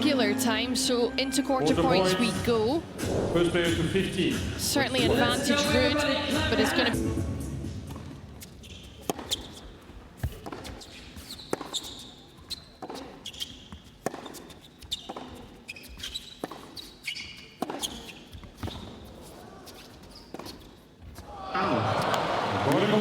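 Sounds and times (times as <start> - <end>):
tennis ball hit by rackets: 9.0 - 11.9.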